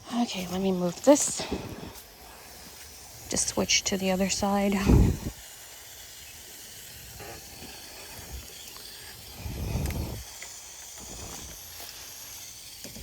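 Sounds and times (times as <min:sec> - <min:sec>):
water hissing from garden hose: 0:00.0 - 0:13.0
low rumble: 0:09.2 - 0:10.4.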